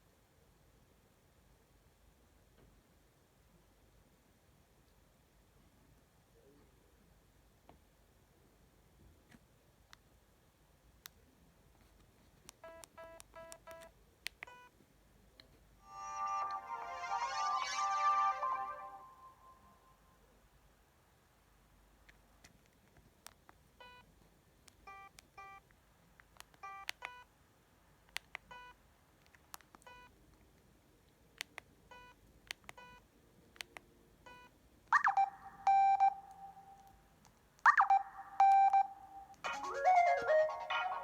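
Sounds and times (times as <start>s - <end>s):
melodic ringtone: 15.9s - 19.6s, 37.7s - 41.0s
phone tone sweeping up into beep: 15.9s - 19.7s, 35.0s - 36.8s, 37.7s - 41.0s.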